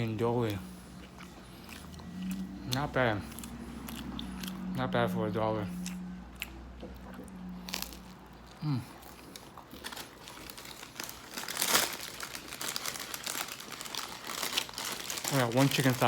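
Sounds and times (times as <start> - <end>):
paper food wrapping crinkling: 9.0 - 16.0.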